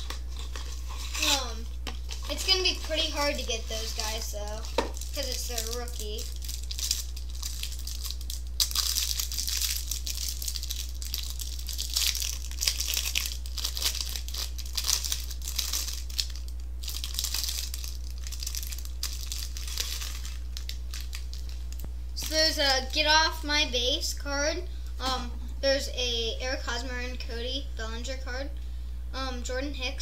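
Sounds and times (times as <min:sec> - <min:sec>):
packaging crinkling and tearing: 0:00.0 - 0:22.6
steady low hum: 0:00.0 - 0:30.0.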